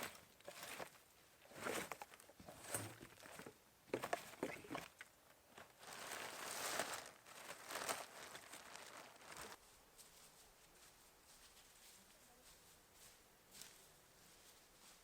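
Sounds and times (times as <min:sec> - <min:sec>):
debris crinkling and tearing: 0:00.0 - 0:09.6.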